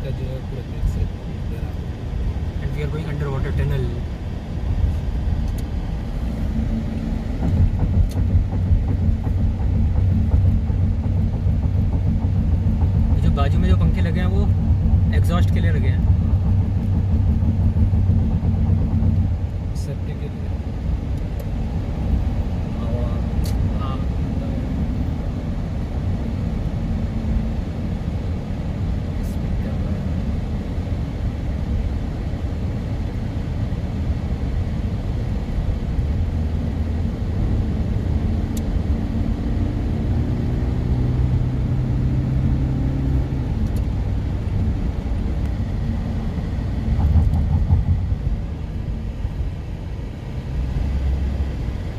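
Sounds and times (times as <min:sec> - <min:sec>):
car road noise from inside: 0:00.0 - 0:51.9.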